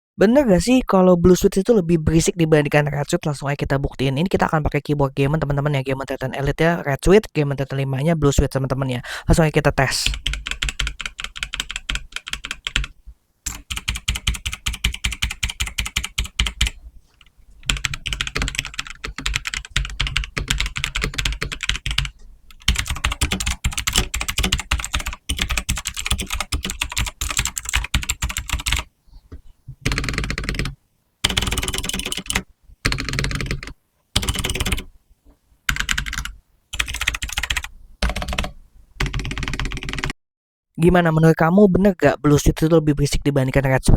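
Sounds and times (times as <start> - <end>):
mechanical keyboard typing: 10.1 - 12.9, 13.5 - 28.9, 29.8 - 34.9, 35.7 - 40.2.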